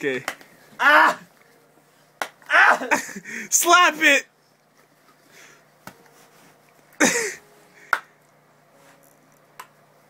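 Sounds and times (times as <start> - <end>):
slaps on stethoscope chest piece: 2.2 - 2.5.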